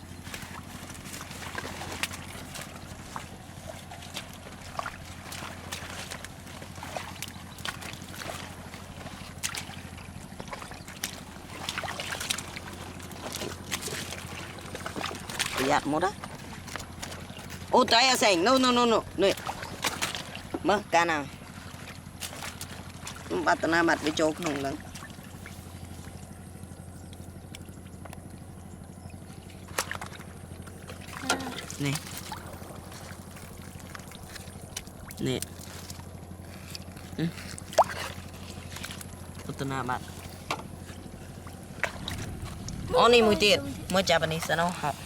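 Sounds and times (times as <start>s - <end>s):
shallow water splashing: 0.0s - 45.0s
steady low hum: 0.0s - 45.0s.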